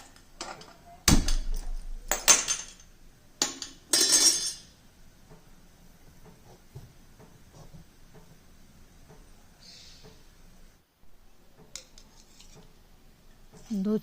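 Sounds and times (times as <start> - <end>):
kitchen utensils clattering: 0.0 - 4.8.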